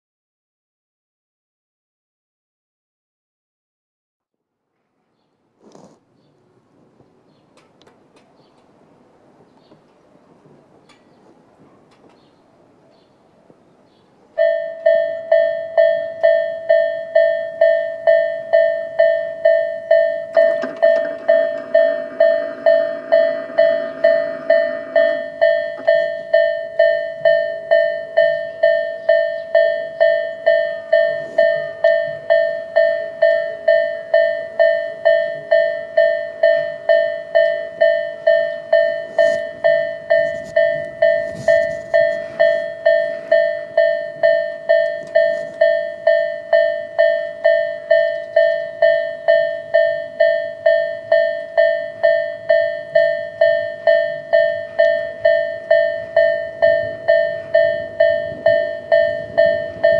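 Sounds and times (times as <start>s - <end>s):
bell ringing: 14.4s - 59.9s
low steady tone: 14.4s - 59.9s.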